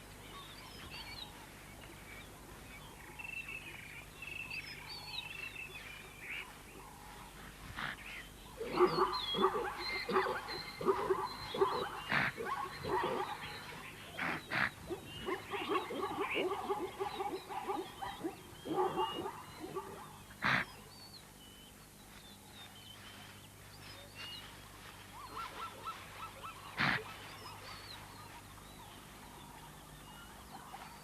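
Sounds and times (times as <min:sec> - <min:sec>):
faint high wavering animal calls: 0:06.3 - 0:20.9, 0:23.0 - 0:31.0
animal yelping and barking calls: 0:08.6 - 0:20.8, 0:25.2 - 0:27.9
sharp snorts: 0:20.4 - 0:20.7, 0:26.8 - 0:27.1.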